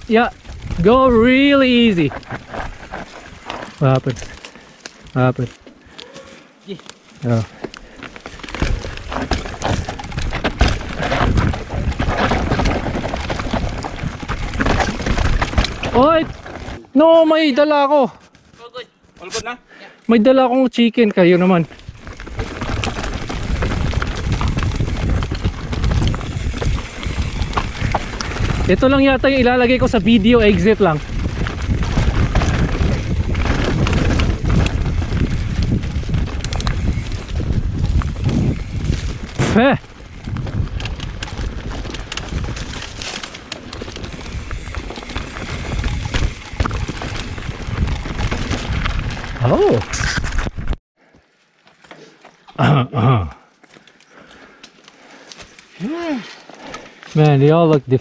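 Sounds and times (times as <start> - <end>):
wind buffeting microphone: 0.0 - 4.4, 8.3 - 16.5, 21.7 - 50.7
bike rolling on loose dirt: 0.0 - 19.2, 20.9 - 52.6, 53.4 - 58.0.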